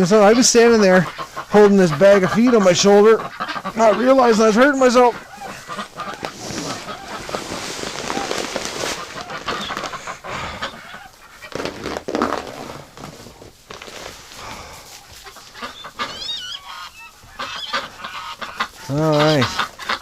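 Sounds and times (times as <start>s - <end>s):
ducks and geese calling: 0.0s - 13.1s, 13.8s - 20.0s
dense rustling: 0.0s - 19.9s
wavering high bird calls: 15.4s - 19.5s.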